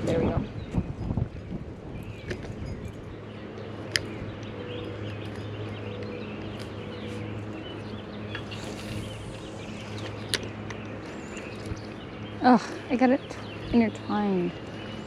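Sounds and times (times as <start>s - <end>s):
small birds chirping: 0.0s - 15.0s
steady low hum: 0.0s - 15.0s.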